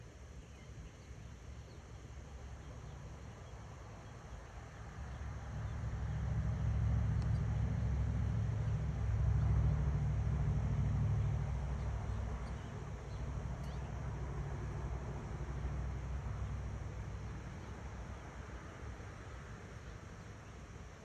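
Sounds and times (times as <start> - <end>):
passing vehicle rumble: 4.8 - 20.8.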